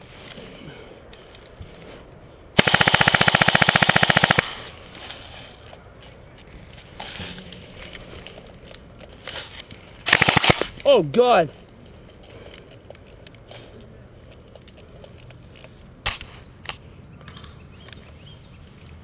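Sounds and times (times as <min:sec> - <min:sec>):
airsoft gun full-auto burst: 0:02.6 - 0:04.6, 0:10.0 - 0:10.7.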